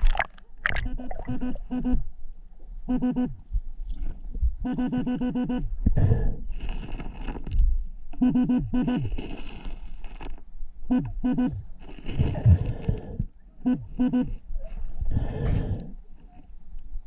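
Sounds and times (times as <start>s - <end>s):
water splashing: 0.0s - 1.6s
metal detector pulsing beeps: 0.8s - 2.0s, 2.9s - 3.4s, 4.6s - 5.7s, 8.2s - 9.1s, 10.9s - 11.6s, 13.6s - 14.4s
gravel scraping: 6.5s - 7.8s, 8.8s - 10.4s, 11.7s - 13.1s.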